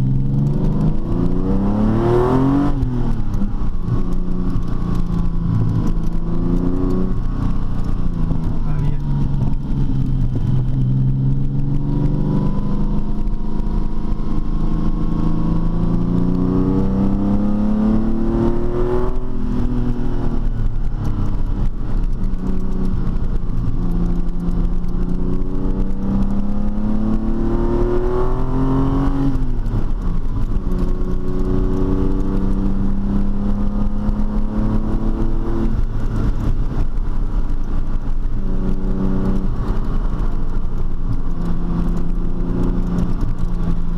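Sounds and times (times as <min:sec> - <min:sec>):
car engine accelerating: 0:00.0 - 0:43.9.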